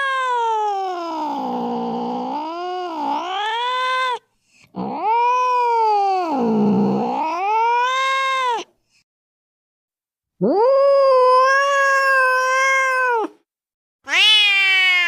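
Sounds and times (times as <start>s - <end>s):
cat yowling: 0.0s - 4.2s, 4.8s - 8.7s, 10.4s - 13.4s, 14.1s - 15.0s.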